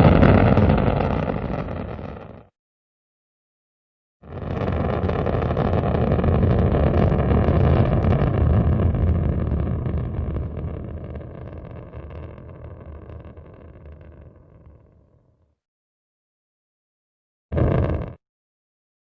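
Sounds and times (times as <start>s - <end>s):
rocket engine rumble: 0.0s - 2.5s, 4.3s - 15.0s, 17.6s - 18.2s.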